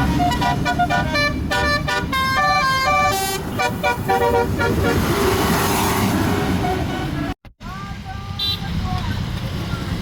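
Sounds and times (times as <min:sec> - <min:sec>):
multi-tone air horn melody: 0:00.0 - 0:05.1
bus engine running: 0:00.0 - 0:05.5.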